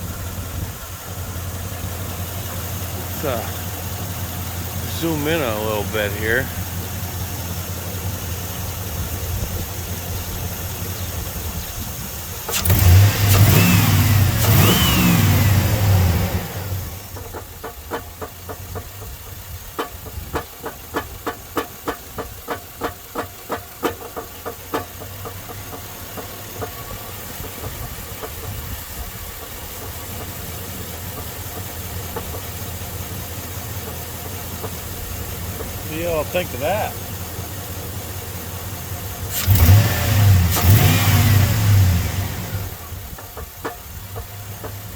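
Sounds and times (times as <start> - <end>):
truck engine running: 0.0 - 44.9
sharp engine knock: 17.0 - 38.2, 42.8 - 44.9.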